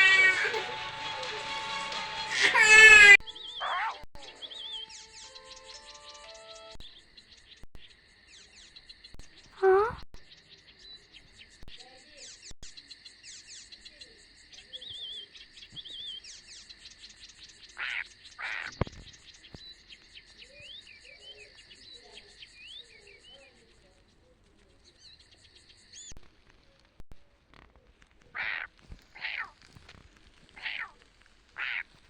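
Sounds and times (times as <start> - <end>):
birds chirping and whistling: 0.0 - 7.0
high insect buzz: 2.3 - 3.2
rustling noises: 18.6 - 20.3, 26.0 - 32.0.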